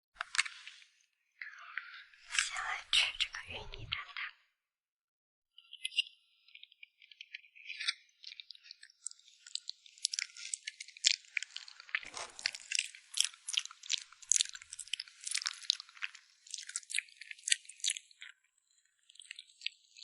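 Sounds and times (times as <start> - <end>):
crisp crunchy chewing: 7.5 - 20.0.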